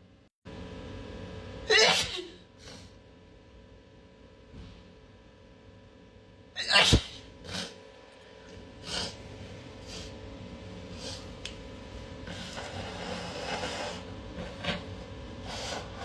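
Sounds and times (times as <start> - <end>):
person sneezing: 1.7 - 2.8, 6.6 - 7.8.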